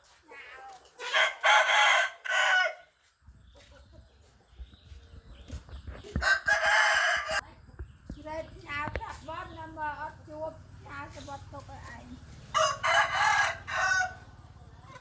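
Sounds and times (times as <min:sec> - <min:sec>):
rooster crowing: 0:01.2 - 0:02.9, 0:06.2 - 0:07.4, 0:12.5 - 0:14.3.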